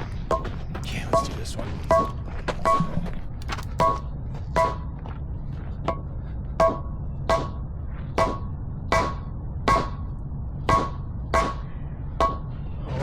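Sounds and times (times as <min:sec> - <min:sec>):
mallet tapping concrete slab: 0:05.9 - 0:07.6, 0:08.2 - 0:10.0, 0:10.7 - 0:11.6, 0:12.2 - 0:12.5.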